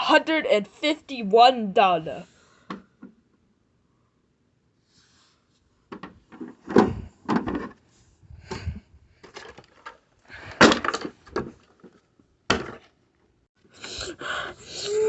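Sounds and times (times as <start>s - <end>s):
knocks and thumps of objects: 5.9s - 7.8s, 10.5s - 11.9s, 12.5s - 12.9s.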